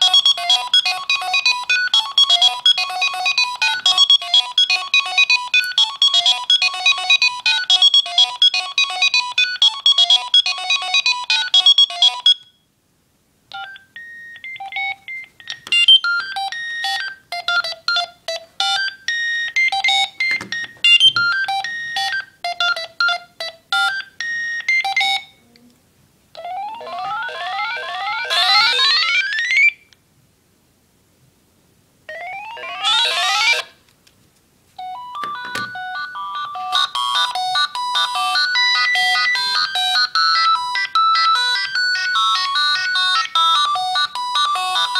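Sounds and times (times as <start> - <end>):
phone ringtone tunes: 0.0 - 12.6, 13.5 - 25.4, 26.4 - 29.8, 32.1 - 33.8, 34.8 - 44.9.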